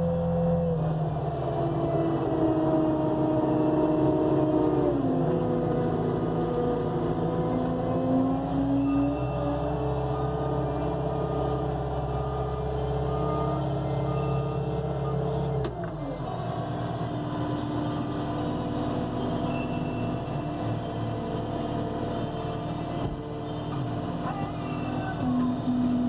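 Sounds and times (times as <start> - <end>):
diesel engine revving: 0.0 - 26.0.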